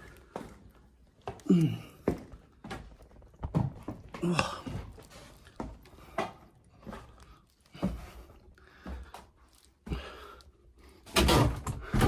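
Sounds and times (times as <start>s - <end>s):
heavy footsteps on stairs: 0.0s - 12.0s
man breathing hard: 4.2s - 11.1s.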